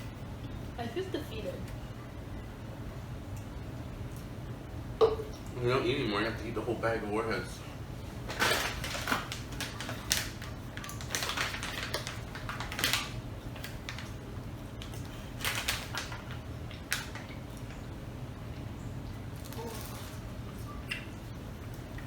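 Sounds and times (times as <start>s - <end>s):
low steady hum: 0.0s - 22.0s
food packaging crackling: 8.2s - 18.0s, 19.2s - 20.5s.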